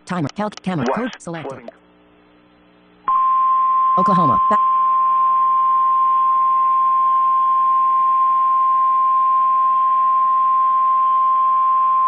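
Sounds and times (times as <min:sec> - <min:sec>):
steady high-pitched alert tone: 0:00.1 - 0:01.8.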